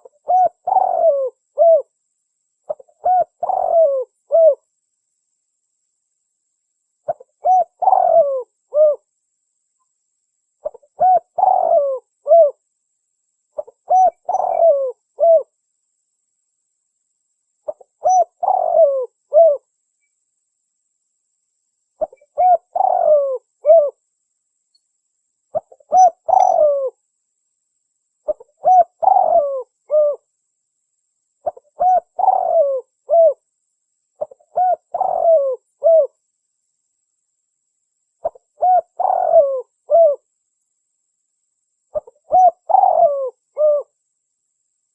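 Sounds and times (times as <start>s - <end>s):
dove cooing: 0.0s - 1.9s, 2.7s - 4.6s, 7.1s - 9.1s, 10.6s - 12.6s, 13.6s - 15.5s, 17.7s - 19.6s, 22.0s - 24.0s, 25.5s - 27.0s, 28.3s - 30.3s, 31.4s - 33.4s, 34.2s - 36.2s, 38.2s - 40.3s, 41.9s - 44.0s.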